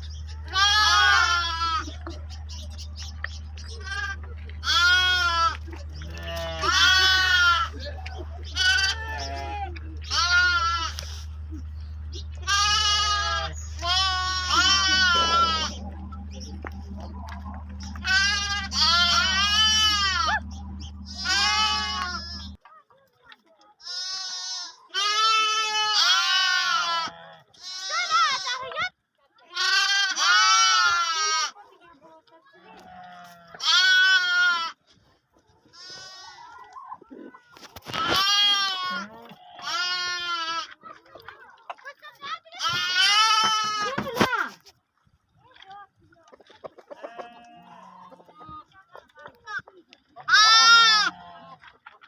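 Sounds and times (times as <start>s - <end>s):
steady low hum: 0.0s - 22.6s
sheep bleating: 0.4s - 2.0s, 3.7s - 11.3s, 12.1s - 22.6s, 23.8s - 28.8s, 29.5s - 31.6s, 32.6s - 34.8s, 35.7s - 36.5s, 37.9s - 40.9s, 42.6s - 44.3s, 46.9s - 48.3s, 50.2s - 51.7s.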